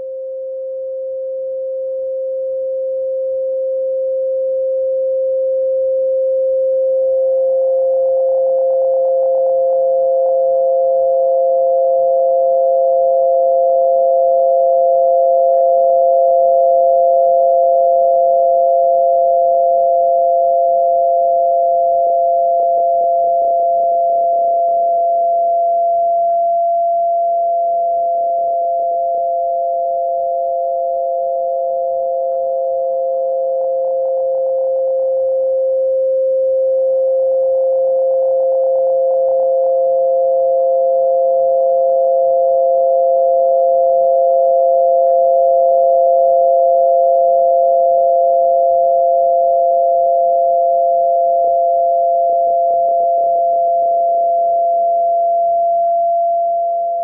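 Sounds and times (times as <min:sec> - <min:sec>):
higher electronic sine tone: 0:00.0 - 0:57.0
low electronic sine tone: 0:00.0 - 0:57.0.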